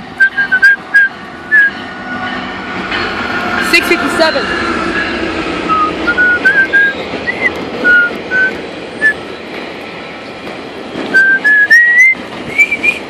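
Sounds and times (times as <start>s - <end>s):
whistled notes: 0.2s - 1.8s, 5.7s - 9.2s, 11.1s - 13.0s.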